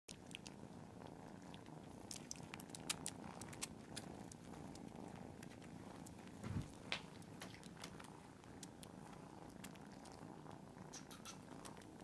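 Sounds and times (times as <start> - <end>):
cats purring: 0.1 - 12.0
faint clicks: 10.9 - 11.9.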